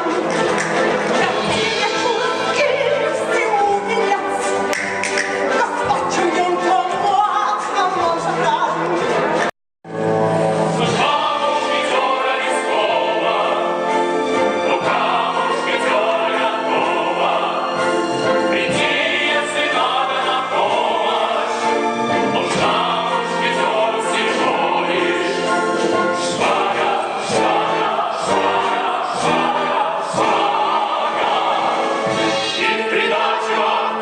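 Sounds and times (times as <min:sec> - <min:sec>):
orchestral accompaniment: 0:00.0 - 0:34.0
several singers: 0:10.7 - 0:34.0.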